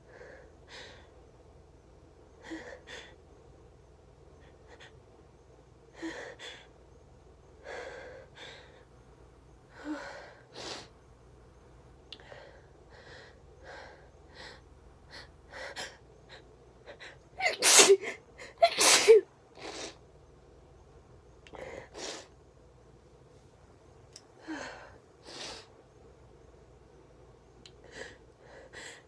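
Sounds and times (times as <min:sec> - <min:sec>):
person sneezing loudly: 0:17.4 - 0:18.0, 0:18.6 - 0:19.2.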